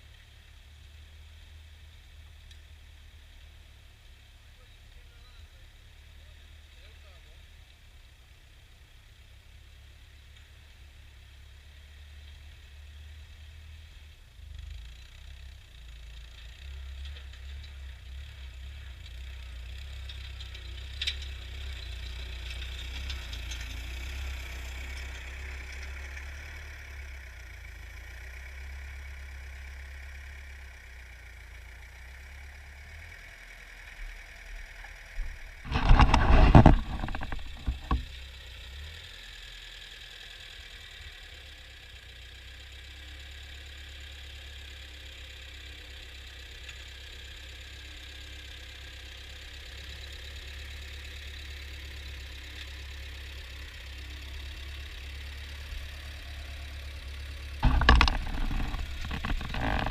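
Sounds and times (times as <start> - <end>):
tractor engine running: 13.5 - 59.9.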